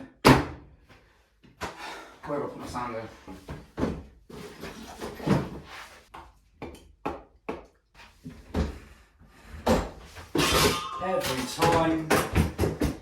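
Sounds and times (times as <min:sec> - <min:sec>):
doors and drawers knocking and banging: 0:03.3 - 0:05.7, 0:09.6 - 0:13.0.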